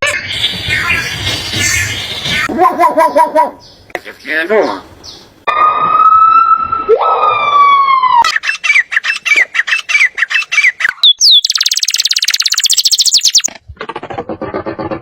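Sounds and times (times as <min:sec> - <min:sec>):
bird chirps: 0:08.2 - 0:13.5
buzzy bird trill: 0:08.3 - 0:13.5.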